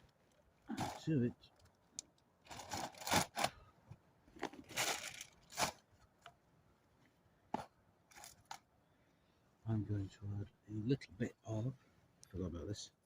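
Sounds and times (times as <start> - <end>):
food packets tearing and crinkling: 2.5 - 3.6, 4.5 - 5.8.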